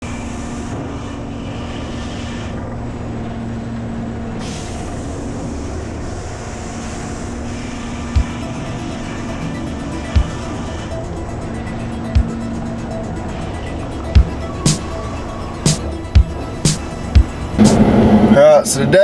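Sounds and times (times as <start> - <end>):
machine running with low hum: 17.6 - 19.0.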